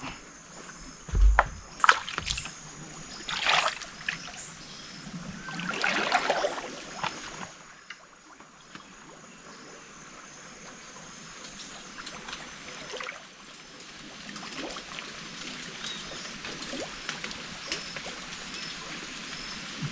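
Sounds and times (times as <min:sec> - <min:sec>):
heavy thump: 0:01.1 - 0:02.5
water splashing as person wades: 0:01.1 - 0:04.5, 0:05.4 - 0:07.7.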